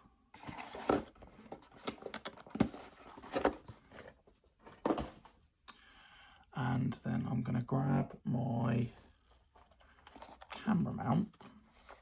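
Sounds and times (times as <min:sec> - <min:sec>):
packaging rustling: 0:00.4 - 0:05.2.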